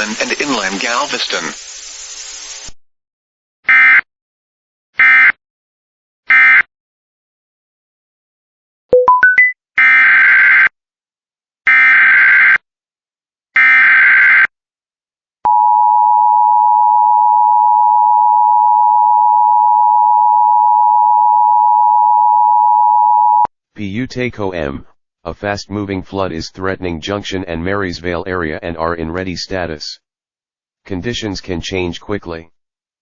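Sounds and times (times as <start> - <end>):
quick rising beeps: 9.0 - 9.6.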